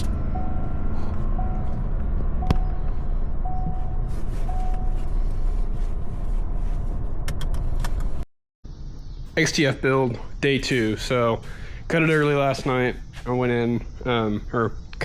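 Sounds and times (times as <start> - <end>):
vehicle engine rumble: 0.0 - 15.0
short beeps: 2.4 - 5.1.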